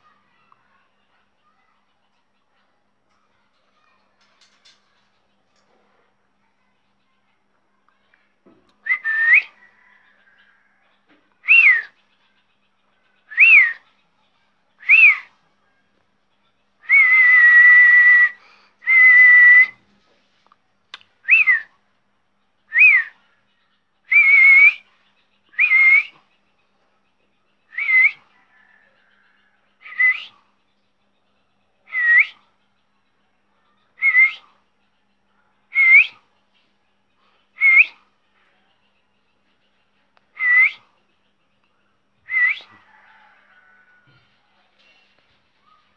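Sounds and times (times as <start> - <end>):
parrot whistling: 42.3 - 42.7.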